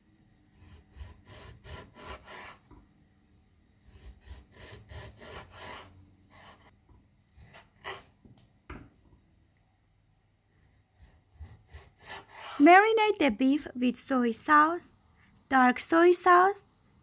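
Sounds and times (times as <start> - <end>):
knife sawing meat on board: 0.5 - 2.7, 3.8 - 6.7, 7.4 - 8.1, 10.8 - 12.6.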